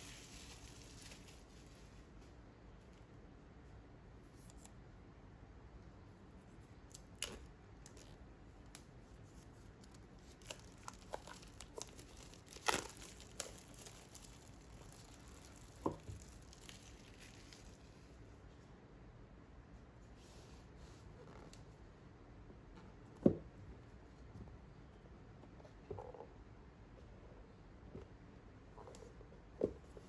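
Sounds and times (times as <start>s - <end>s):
packaging crinkling and tearing: 0.0s - 1.8s, 9.8s - 17.9s.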